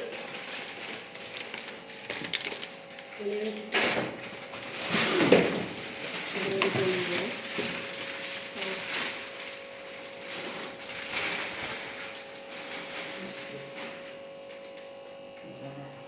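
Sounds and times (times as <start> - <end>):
electrical hum: 0.0 - 16.0.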